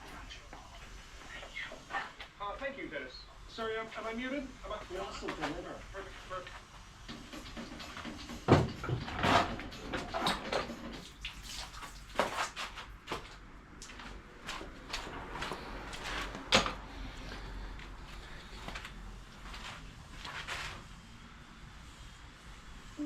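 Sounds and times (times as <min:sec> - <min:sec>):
objects knocking and clunking: 0:07.0 - 0:11.1
scuffling and rustling: 0:17.2 - 0:20.9.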